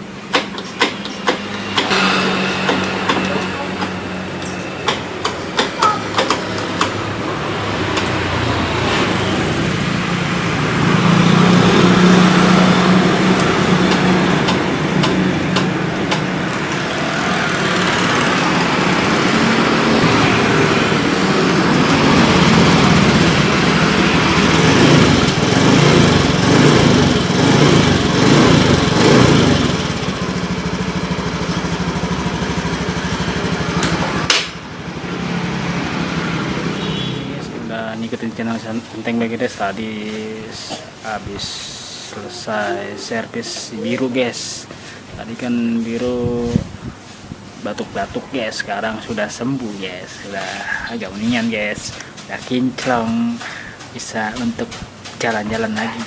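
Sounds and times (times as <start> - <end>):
motorcycle engine revving: 0.0 - 37.8.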